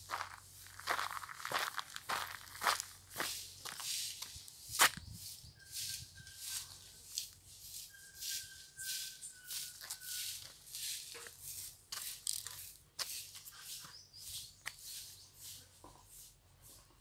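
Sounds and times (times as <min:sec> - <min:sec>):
birds rustling and scratching: 0:05.3 - 0:16.9.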